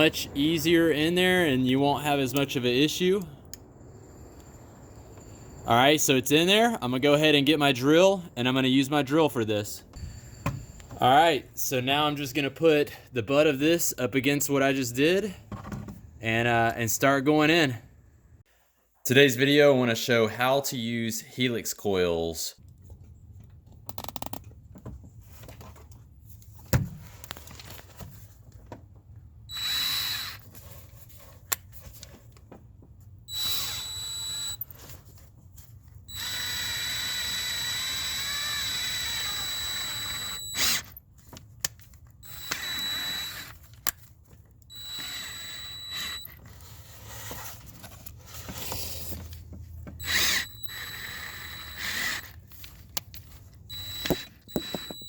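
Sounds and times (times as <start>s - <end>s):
power drill whining: 10.0s - 10.9s, 29.5s - 30.4s, 33.3s - 34.6s, 36.1s - 41.0s, 42.2s - 43.6s, 44.7s - 46.6s, 50.0s - 52.4s, 53.7s - 55.0s.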